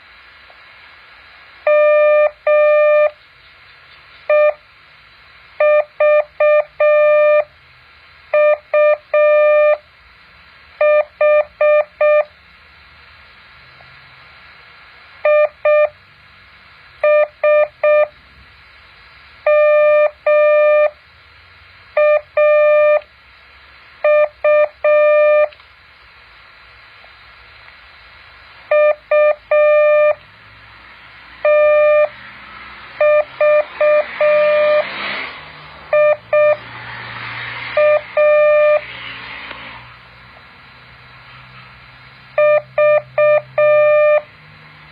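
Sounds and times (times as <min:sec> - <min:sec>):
faint background hiss: 0:00.0 - 0:37.3
morse code beeps: 0:01.7 - 0:03.2, 0:04.3 - 0:04.6, 0:05.6 - 0:07.5, 0:08.4 - 0:09.8, 0:10.8 - 0:12.3, 0:15.2 - 0:16.0, 0:17.0 - 0:18.1, 0:19.5 - 0:21.0, 0:22.0 - 0:23.0, 0:24.0 - 0:25.5, 0:28.7 - 0:30.2, 0:31.4 - 0:32.1, 0:33.0 - 0:34.8, 0:35.9 - 0:36.6, 0:37.8 - 0:38.8, 0:42.4 - 0:44.3.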